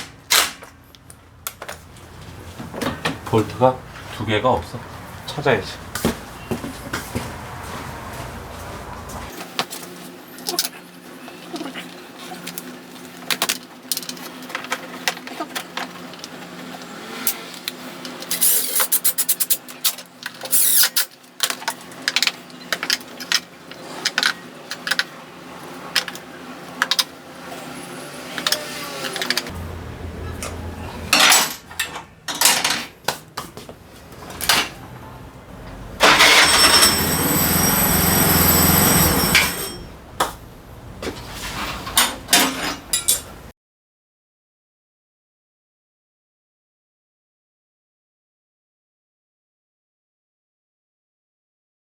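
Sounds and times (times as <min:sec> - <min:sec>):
loud mechanical whirr: 0:27.2 - 0:31.2, 0:35.3 - 0:41.0
metal tools clicking and knocking: 0:41.8 - 0:43.4.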